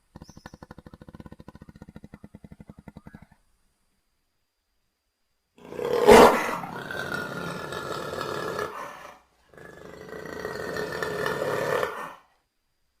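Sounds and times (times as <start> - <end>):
jaguar roaring: 5.6 - 12.3.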